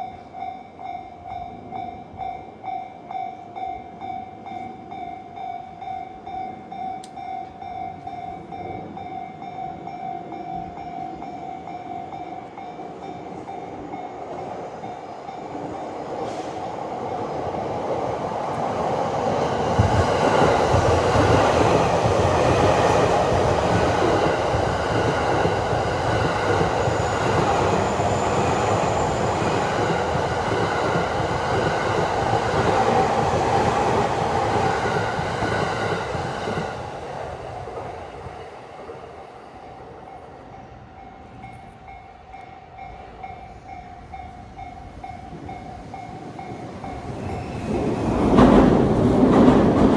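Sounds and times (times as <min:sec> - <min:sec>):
level crossing warning bell: 0:00.0 - 0:16.0
electric train rumbling past: 0:00.0 - 0:49.9.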